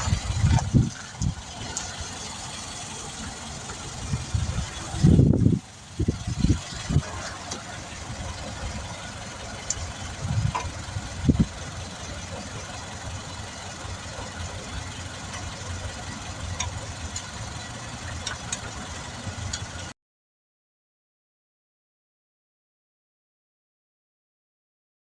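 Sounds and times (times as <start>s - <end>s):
bus engine running: 0.0s - 20.0s.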